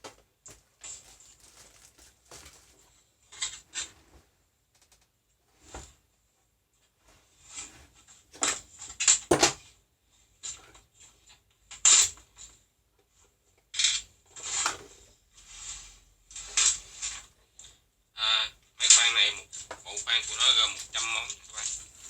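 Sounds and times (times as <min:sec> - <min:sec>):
packaging rustles clicks and knocks: 0:00.0 - 0:03.7.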